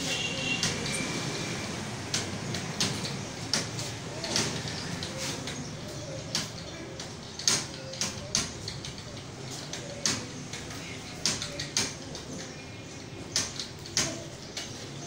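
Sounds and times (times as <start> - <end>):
computer keyboard key clicks: 6.3 - 12.5, 13.4 - 14.7.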